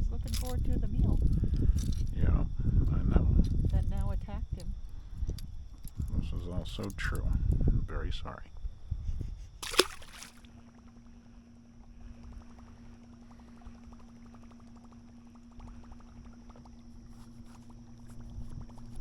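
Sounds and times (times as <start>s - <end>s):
steady low hum: 0.0s - 19.0s
water lapping against boat: 9.6s - 10.8s.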